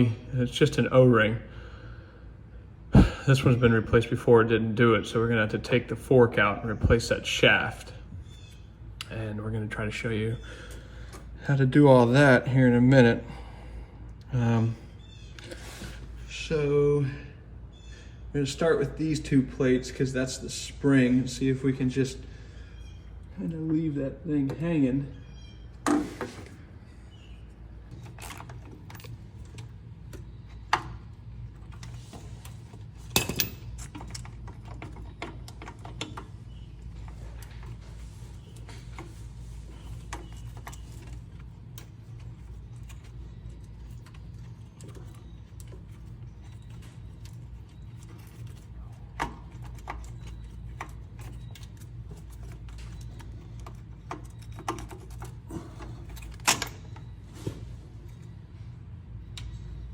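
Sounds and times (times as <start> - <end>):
steady low hum: 0.0 - 59.9
tools and steel parts clinking: 31.5 - 39.1, 39.7 - 57.2.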